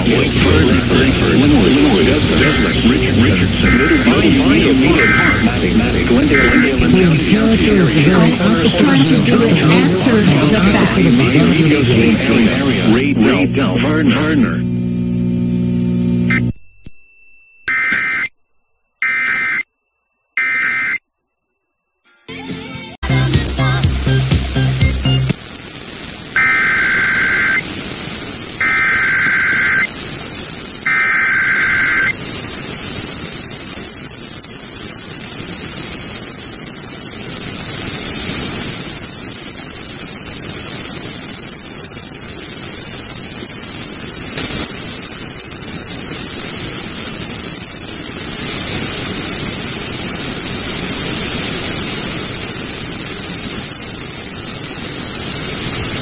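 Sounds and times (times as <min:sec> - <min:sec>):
buzzy two-tone digital data bursts: 0:00.0 - 0:13.0, 0:17.7 - 0:18.3, 0:19.0 - 0:19.7, 0:20.4 - 0:21.0, 0:24.6 - 0:47.5
radio static hiss: 0:00.0 - 0:16.5, 0:17.7 - 0:18.3, 0:19.0 - 0:19.7, 0:20.4 - 0:21.0, 0:22.0 - 0:56.0.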